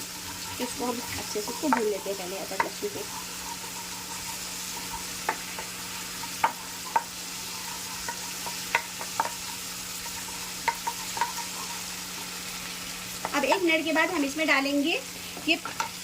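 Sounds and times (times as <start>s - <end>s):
paste sizzling in hot oil: 0.0s - 16.0s.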